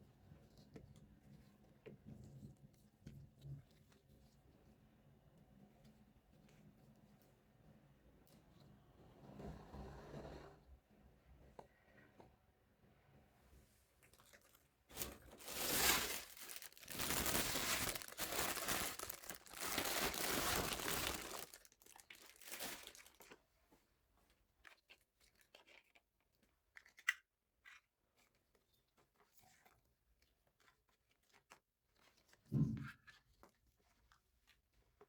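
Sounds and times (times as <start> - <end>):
plastic packaging tearing: 14.9 - 23.3.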